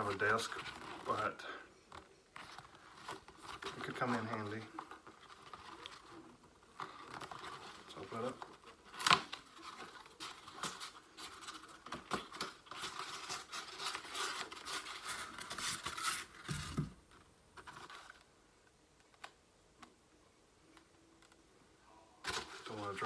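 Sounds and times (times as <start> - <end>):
packaging tearing and crinkling: 2.5 - 16.8.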